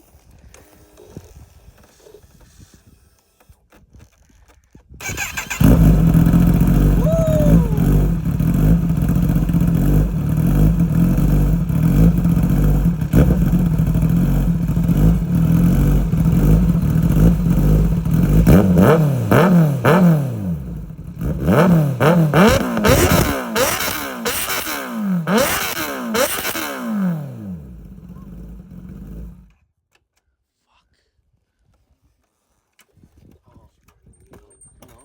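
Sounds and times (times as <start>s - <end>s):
motorcycle engine starting and idling: 0.1s - 29.6s
motorcycle engine revving: 5.0s - 29.6s.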